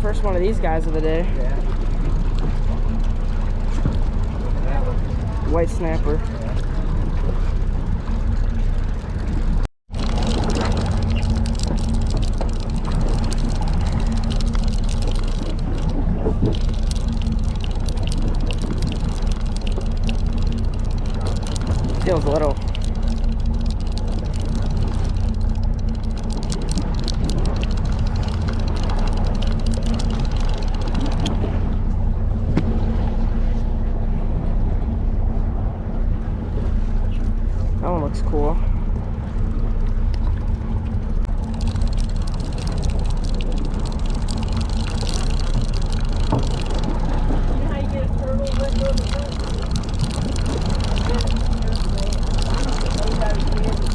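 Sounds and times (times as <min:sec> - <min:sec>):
boat engine humming: 0:00.0 - 0:53.9
small ticks: 0:10.0 - 0:31.4, 0:41.3 - 0:47.0, 0:48.2 - 0:53.9.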